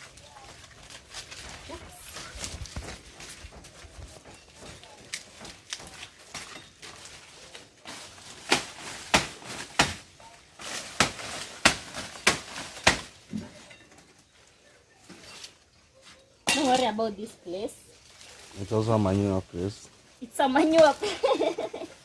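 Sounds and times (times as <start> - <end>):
machete chopping sugarcane: 8.4 - 10.1, 10.8 - 13.3.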